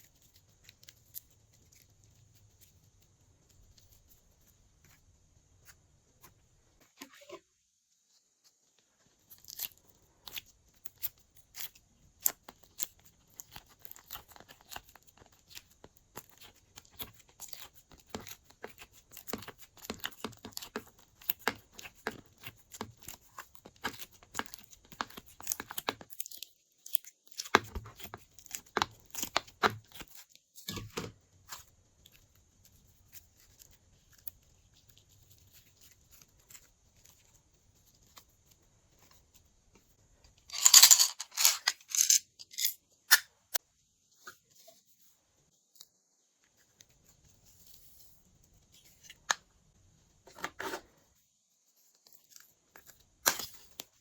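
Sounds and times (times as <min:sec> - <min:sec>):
slime squishing with sticky pops: 0:09.3 - 0:37.3.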